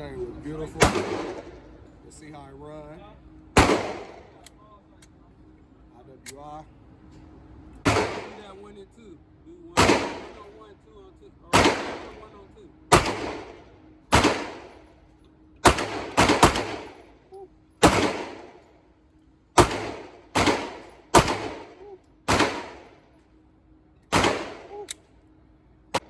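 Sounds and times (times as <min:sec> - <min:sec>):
echoing gunshots: 0:00.8 - 0:01.8, 0:03.6 - 0:04.4, 0:07.8 - 0:08.7, 0:09.8 - 0:10.6, 0:11.5 - 0:14.9, 0:15.6 - 0:17.1, 0:17.8 - 0:18.6, 0:19.6 - 0:23.0, 0:24.1 - 0:24.9.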